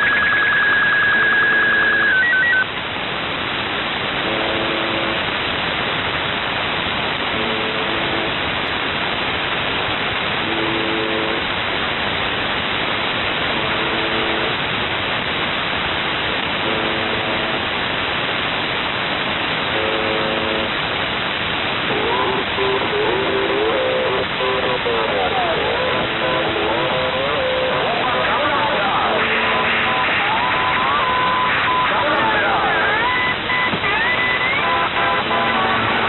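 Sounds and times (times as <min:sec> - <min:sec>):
radio static hiss: 0:00.0 - 0:36.0
short buzz tone: 0:13.6 - 0:14.6, 0:19.7 - 0:20.8.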